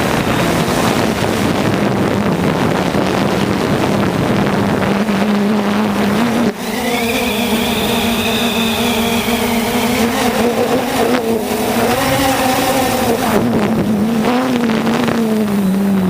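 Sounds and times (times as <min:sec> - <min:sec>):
drone motors whining: 0:04.7 - 0:16.0
high whistling: 0:06.6 - 0:10.5.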